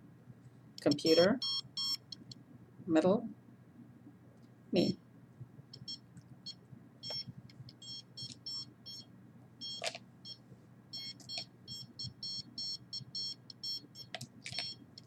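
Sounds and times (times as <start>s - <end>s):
radiation detector beeping: 0.9s - 2.4s, 5.7s - 15.0s.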